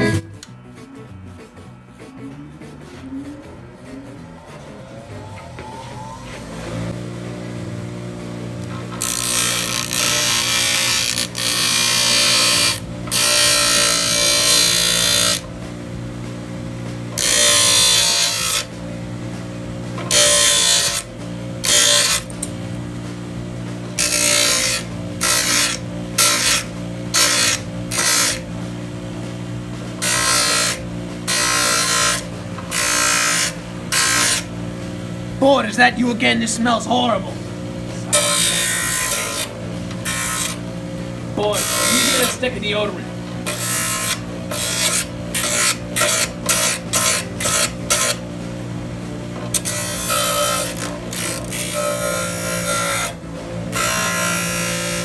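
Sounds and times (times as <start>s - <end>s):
steady low hum: 0.0s - 55.0s
tool grinding phone casing: 8.6s - 15.6s, 17.1s - 18.8s, 19.9s - 22.8s, 23.9s - 28.5s, 29.9s - 34.6s, 37.9s - 40.7s, 41.4s - 42.6s, 43.3s - 48.2s, 49.4s - 55.0s.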